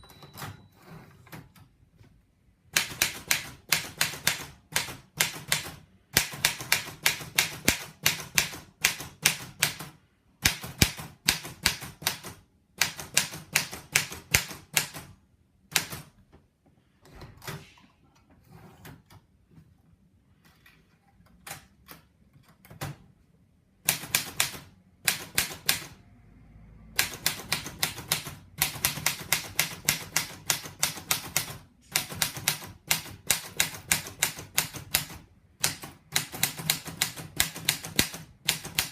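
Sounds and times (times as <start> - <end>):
faint mechanical sounds: 12.2 - 32.8.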